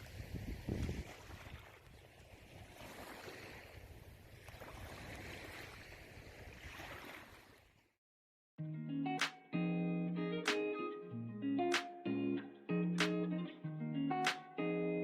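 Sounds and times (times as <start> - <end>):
moving water: 0.0 - 7.9
wind: 0.0 - 8.0
strummed guitar music: 8.6 - 15.0.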